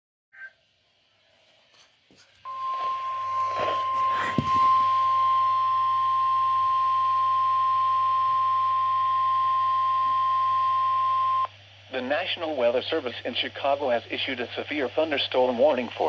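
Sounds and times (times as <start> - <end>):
steady high beep: 2.5 - 11.5
low hum: 2.5 - 16.0.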